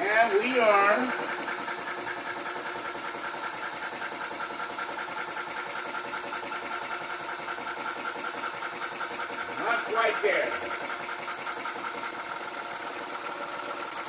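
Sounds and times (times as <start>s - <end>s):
air compressor running: 0.0s - 14.0s.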